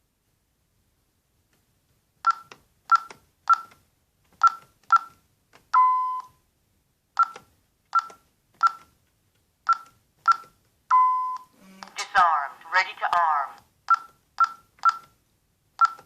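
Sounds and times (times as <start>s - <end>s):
short high keypad beeps: 5.8s - 6.3s, 9.7s - 11.9s.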